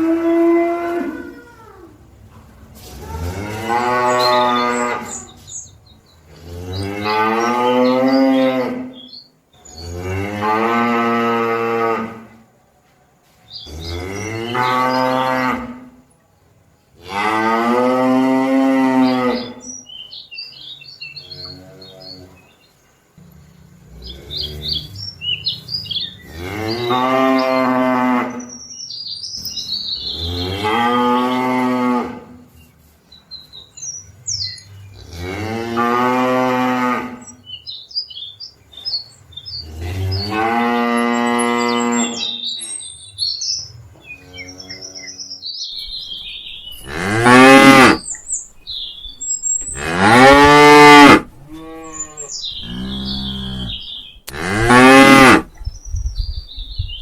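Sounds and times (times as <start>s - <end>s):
cattle mooing: 45.9s - 48.9s, 49.6s - 55.5s.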